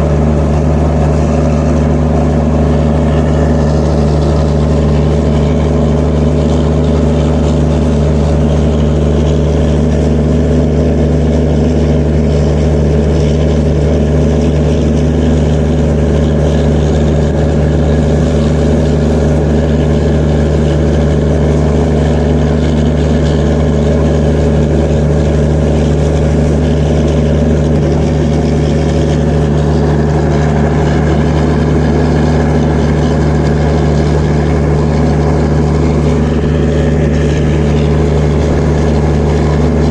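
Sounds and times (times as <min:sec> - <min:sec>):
diesel generator engine drone: 0:00.0 - 0:39.9.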